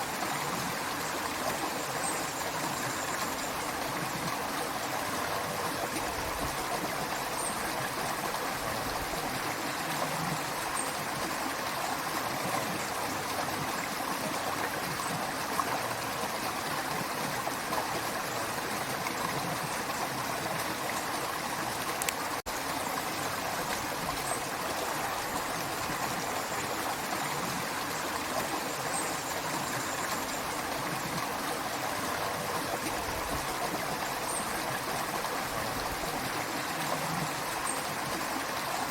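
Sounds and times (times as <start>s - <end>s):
creek water babbling over stones: 0.0s - 38.9s.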